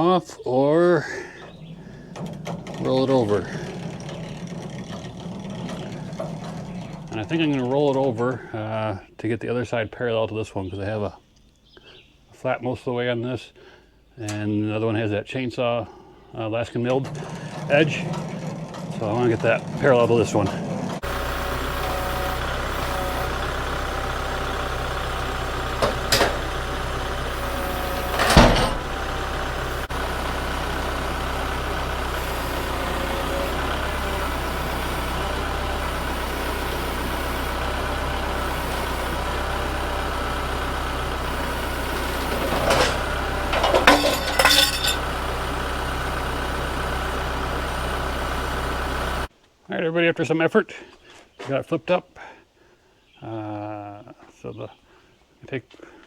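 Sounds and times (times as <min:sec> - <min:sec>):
engine idling: 0:00.0 - 0:08.8, 0:16.0 - 0:49.3
short knocks and clatters: 0:01.4 - 0:08.5, 0:16.9 - 0:30.0, 0:41.1 - 0:45.0.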